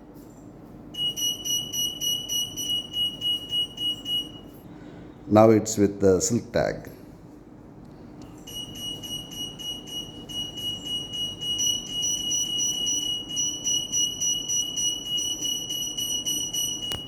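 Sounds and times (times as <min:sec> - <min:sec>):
pulsing electronic alarm beep: 0:01.0 - 0:04.6, 0:08.5 - 0:17.0.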